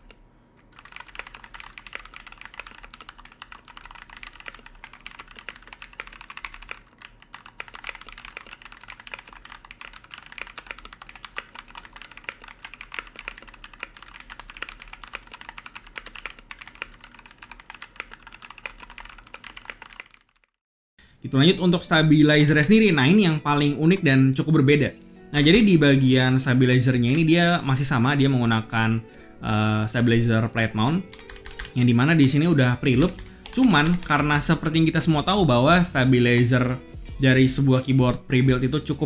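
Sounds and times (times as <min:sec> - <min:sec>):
mechanical keyboard typing: 0:00.7 - 0:20.6, 0:31.1 - 0:35.2.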